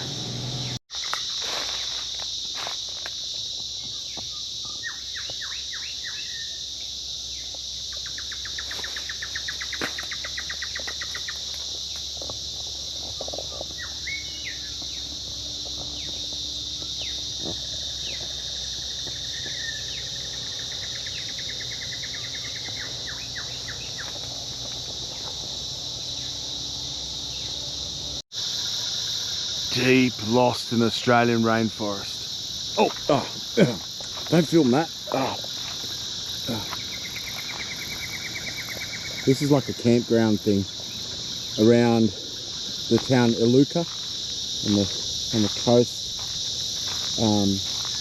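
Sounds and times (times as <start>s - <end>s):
high-pitched insect chorus: 0.0s - 48.0s
birds chirping: 12.7s - 26.5s, 31.8s - 43.6s.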